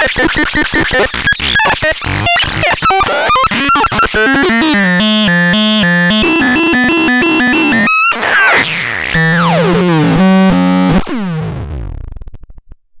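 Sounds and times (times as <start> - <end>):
electronic synthesizer bleeps: 1.5 - 10.9.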